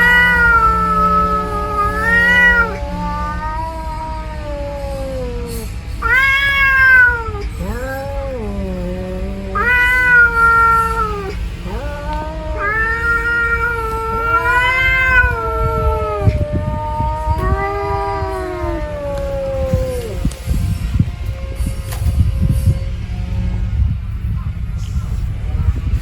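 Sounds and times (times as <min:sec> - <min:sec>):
low cat yowl: 0:00.0 - 0:20.7
high cat yowl: 0:00.0 - 0:20.8.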